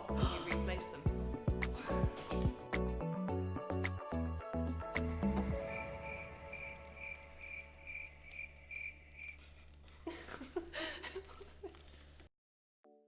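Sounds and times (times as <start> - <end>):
cricket chirps: 5.5 - 9.4.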